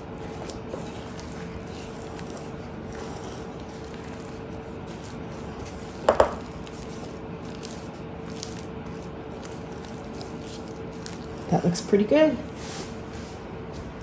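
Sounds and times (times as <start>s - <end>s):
batter scraping and squelching: 0.0s - 13.4s
steady low hum: 0.0s - 14.0s
utensil knocking against bowl: 6.0s - 6.4s.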